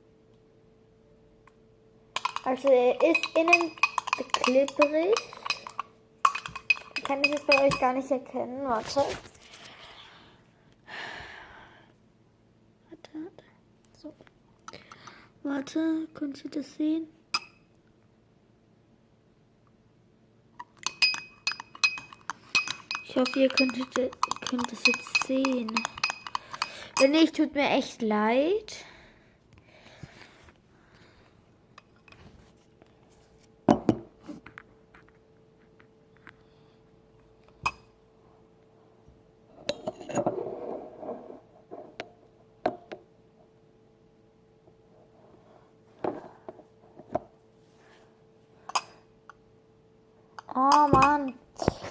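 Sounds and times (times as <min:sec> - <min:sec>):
spoon clinking against a dish: 0:02.2 - 0:07.9, 0:17.4 - 0:17.6, 0:20.7 - 0:27.2, 0:48.7 - 0:49.0.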